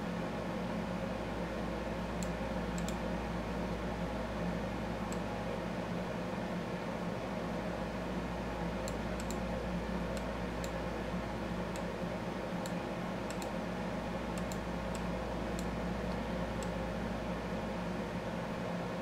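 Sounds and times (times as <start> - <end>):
low electrical hum: 0.0 - 19.0
computer mouse clicks: 2.2 - 3.0, 8.8 - 9.4, 10.1 - 10.8, 12.6 - 13.6, 14.4 - 16.8.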